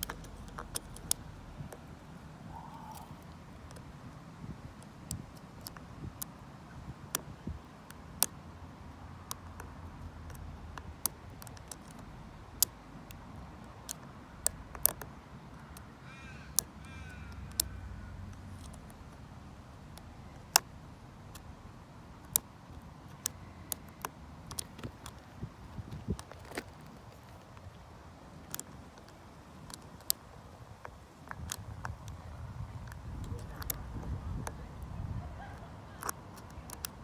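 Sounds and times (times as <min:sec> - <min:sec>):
metal clicks of lock picking: 0:00.0 - 0:01.4
bird cawing: 0:02.4 - 0:03.3, 0:16.0 - 0:18.3
low wind rumble: 0:24.8 - 0:37.0.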